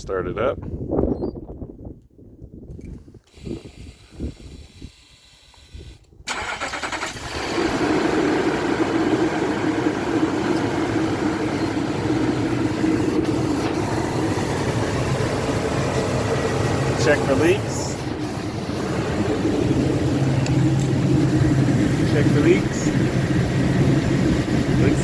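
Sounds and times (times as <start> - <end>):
van engine cranking and idling: 6.2 - 25.0.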